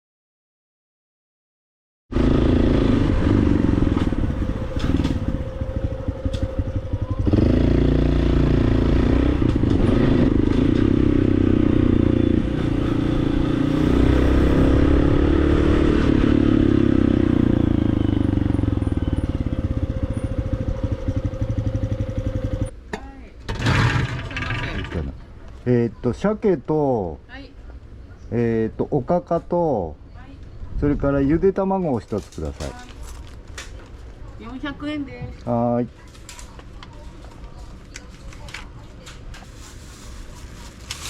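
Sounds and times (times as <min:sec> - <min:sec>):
motorcycle engine revving: 0:02.1 - 0:22.8, 0:23.5 - 0:25.2.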